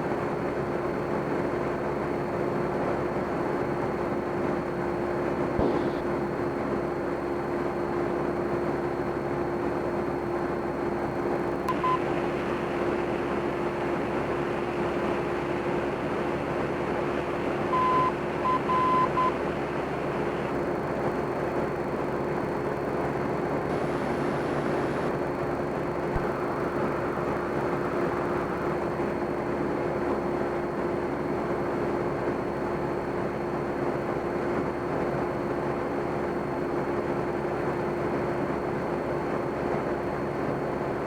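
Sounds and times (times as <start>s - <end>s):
aircraft engine and propeller droning: 0.0s - 41.0s
short high beeps: 11.7s - 12.1s, 17.6s - 20.4s.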